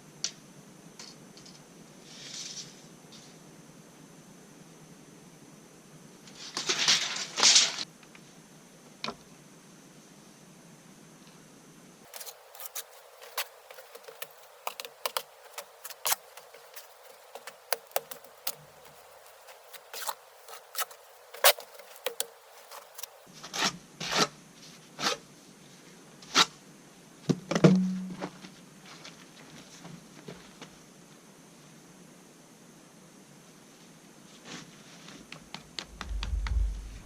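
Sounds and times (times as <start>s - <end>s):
brief low hum: 35.9s - 37.0s.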